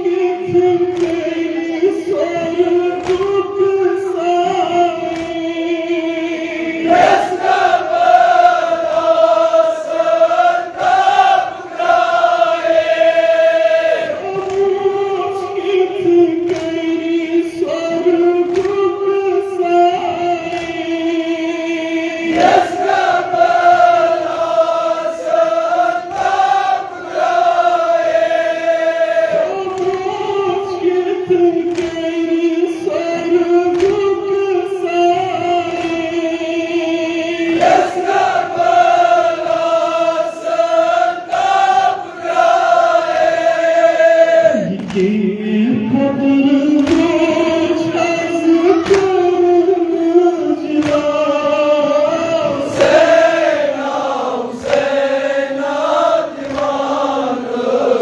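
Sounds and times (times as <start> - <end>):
group chanting a lament: 0.0 - 58.0
sharp steady beats: 5.0 - 15.1, 22.2 - 30.2.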